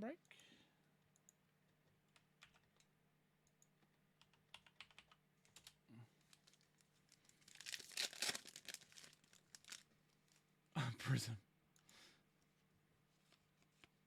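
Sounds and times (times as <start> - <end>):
trading cards crinkling: 5.4 - 10.4.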